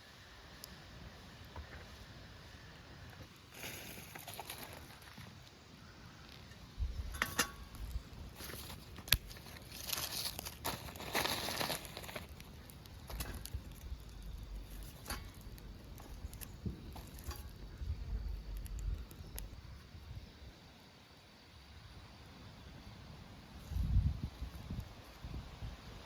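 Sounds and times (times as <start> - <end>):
rustling and crinkling handling: 3.2 - 5.5, 7.2 - 19.6.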